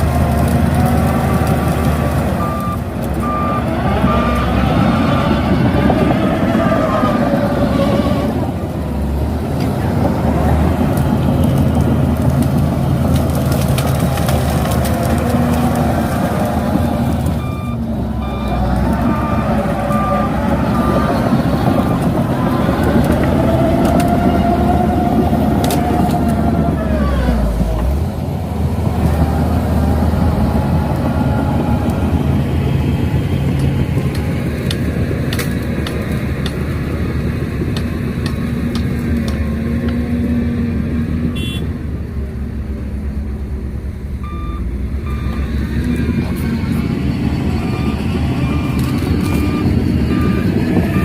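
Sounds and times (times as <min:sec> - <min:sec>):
bulldozer engine whining under load: 0:00.0 - 0:51.0
reversing alarm beeps: 0:17.4 - 0:21.1, 0:44.2 - 0:45.5.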